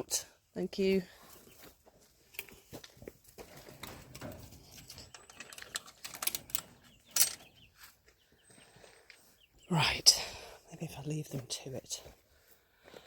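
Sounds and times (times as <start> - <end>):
chickens scratching and pecking: 1.3 - 9.5.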